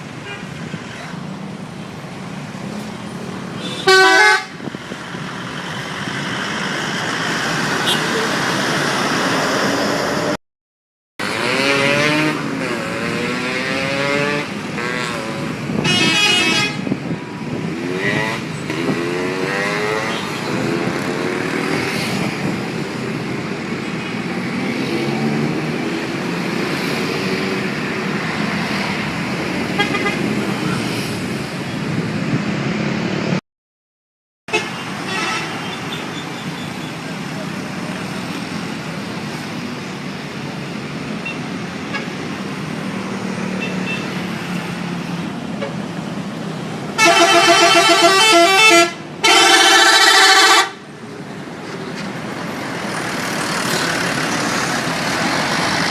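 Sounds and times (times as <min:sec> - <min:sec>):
traffic and engine noise: 0:00.0 - 0:10.4, 0:11.2 - 0:33.4, 0:34.5 - 0:55.9
musical bus air horns: 0:03.6 - 0:04.6, 0:15.8 - 0:16.9, 0:29.8 - 0:30.2, 0:34.5 - 0:35.6, 0:47.0 - 0:50.8.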